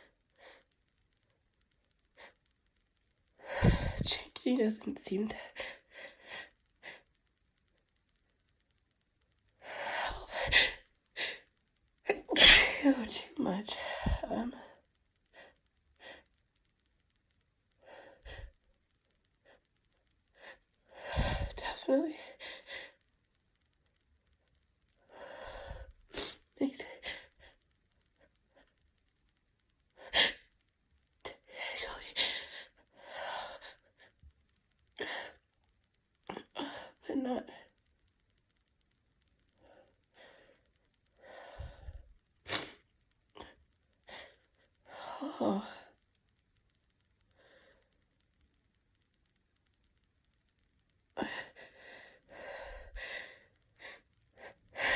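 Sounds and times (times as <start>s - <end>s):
person breathing and sniffing: 41.2s - 42.8s.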